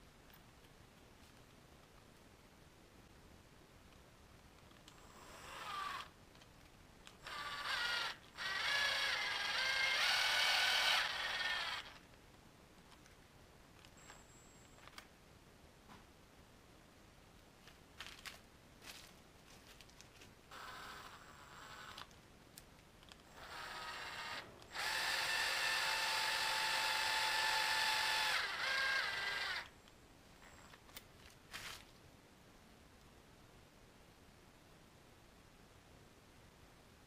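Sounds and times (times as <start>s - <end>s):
electric drill whining: 4.9s - 6.1s, 7.2s - 12.0s, 20.5s - 22.1s, 23.3s - 29.7s.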